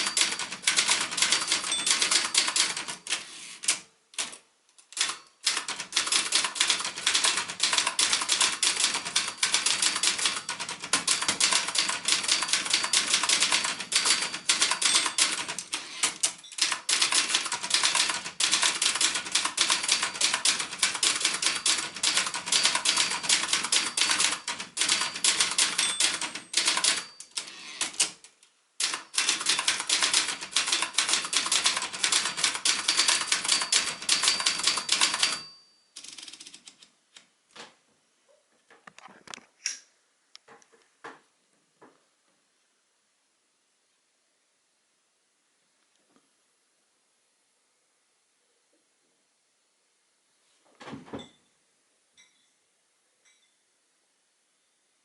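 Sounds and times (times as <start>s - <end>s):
typewriter keystroke clacks: 0.0s - 36.9s.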